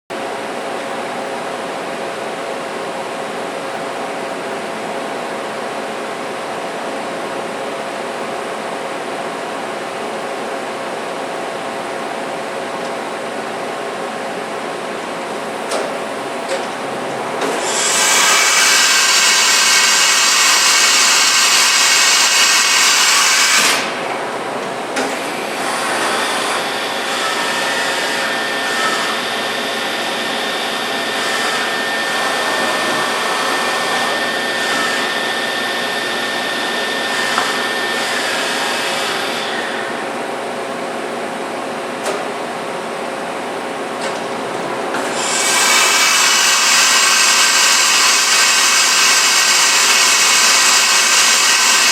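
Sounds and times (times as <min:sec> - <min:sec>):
machining center whirring: 0:00.1 - 0:51.9
steady high whine: 0:00.1 - 0:51.9
machine hissing: 0:17.4 - 0:24.1, 0:45.0 - 0:51.9.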